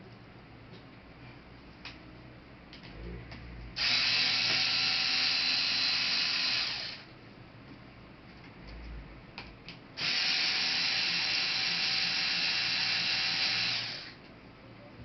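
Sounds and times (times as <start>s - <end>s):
electric screwdriver running: 3.8s - 7.1s, 10.0s - 14.2s.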